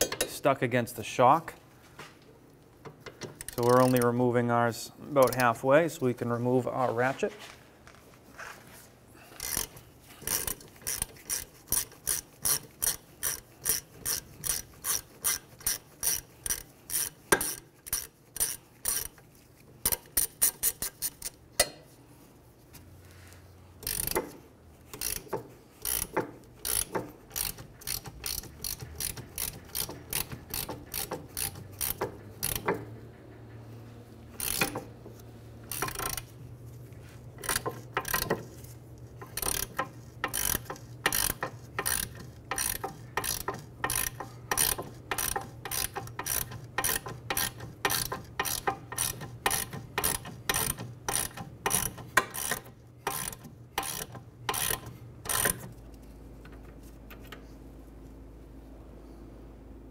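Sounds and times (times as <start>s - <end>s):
hand ratchet clicking: 2.8s - 4.2s, 5.2s - 5.6s, 9.3s - 21.7s, 23.8s - 33.0s, 34.3s - 34.9s, 35.6s - 36.5s, 37.3s - 55.8s.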